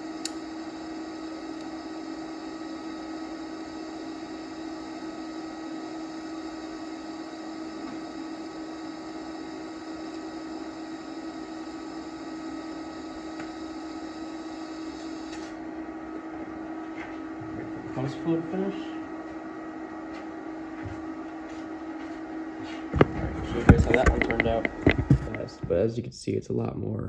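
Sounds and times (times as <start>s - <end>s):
welding arc hiss: 0.0s - 15.6s
welding arc hum and whine: 0.0s - 26.4s.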